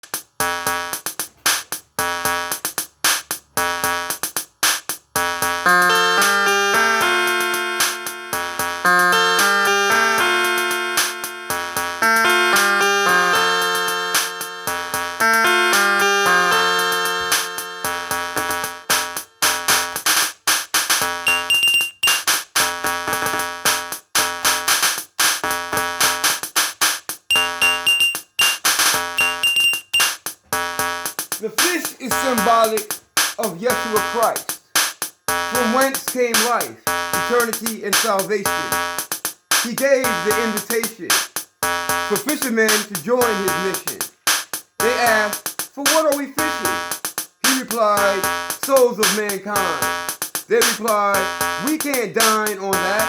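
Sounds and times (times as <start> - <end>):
drum machine beat: 0.0 - 53.0
synthesizer chords: 5.4 - 20.0, 21.0 - 23.8, 27.3 - 30.2
short synthesizer chords: 27.3 - 30.1.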